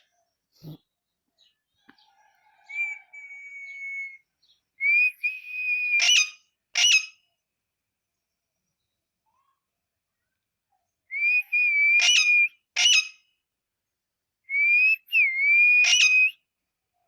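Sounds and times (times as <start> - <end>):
parrot whistling: 11.5 - 13.1, 14.9 - 16.3
parrot sharp calls: 12.0 - 13.1, 15.8 - 16.3.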